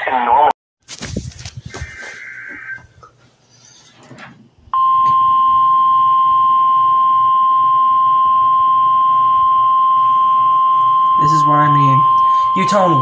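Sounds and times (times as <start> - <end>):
steady loud alert tone: 11.1 - 13.0.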